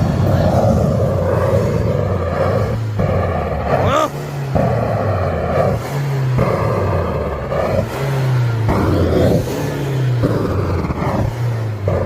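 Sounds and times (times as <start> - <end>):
diesel engine revving: 0.0 - 12.0
rushing exhaust noise: 0.0 - 12.0.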